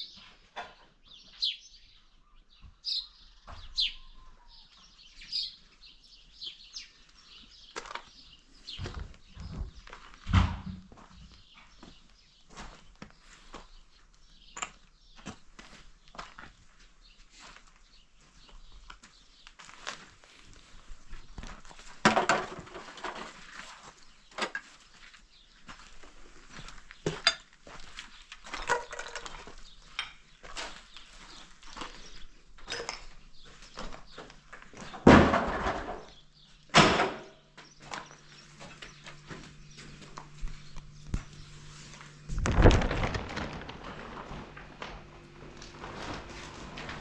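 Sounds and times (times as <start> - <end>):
hard objects knocking and clattering: 22.0 - 23.3, 28.6 - 29.4
low steady hum: 37.4 - 47.0.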